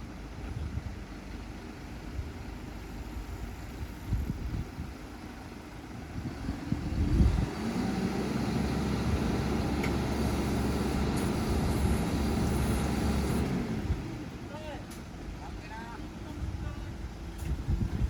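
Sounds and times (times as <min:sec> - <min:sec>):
truck engine rumbling: 0:00.0 - 0:18.0.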